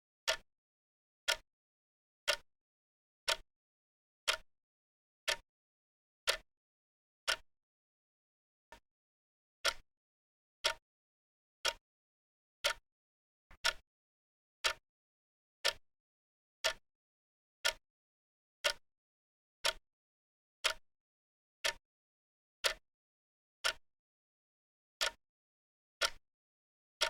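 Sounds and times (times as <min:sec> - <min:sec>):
clock ticking: 0:09.6 - 0:09.8, 0:13.5 - 0:13.8, 0:22.6 - 0:22.8.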